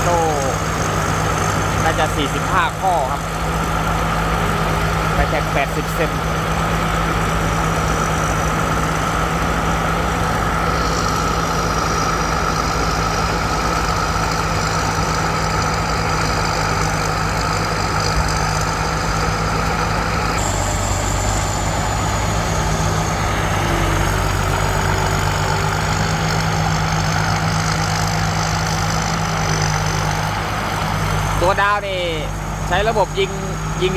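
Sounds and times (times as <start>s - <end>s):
combine harvester running: 0.0s - 33.9s
thin high whine: 18.8s - 27.1s.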